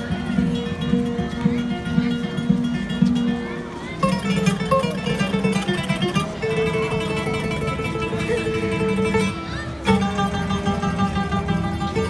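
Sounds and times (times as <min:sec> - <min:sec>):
acoustic guitar instrumental music: 0:00.0 - 0:12.0.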